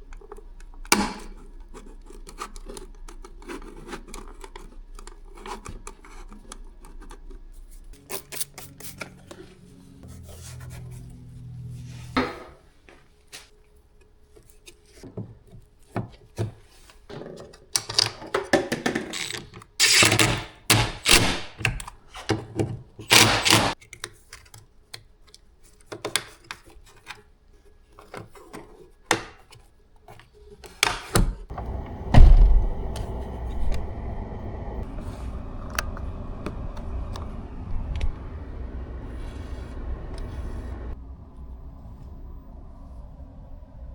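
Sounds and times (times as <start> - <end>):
heavy thunk: 31.5 - 34.1
steady low hum: 31.5 - 43.9.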